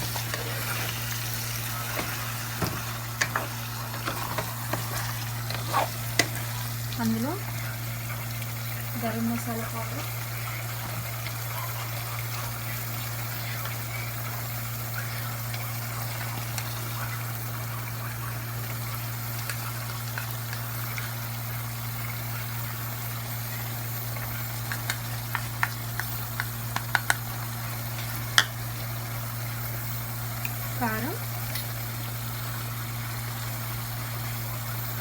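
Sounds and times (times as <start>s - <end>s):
curry sizzling in a pan: 0.0s - 35.0s
spoon tapping against pan: 24.7s - 27.2s.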